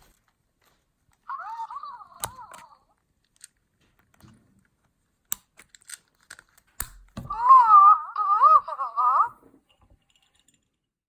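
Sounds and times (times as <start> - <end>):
hands handling plastic toy: 0.0 - 7.2.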